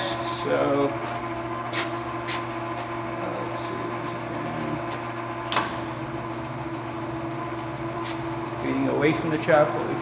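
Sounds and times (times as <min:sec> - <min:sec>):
lathe mechanical hum: 0:00.0 - 0:10.0.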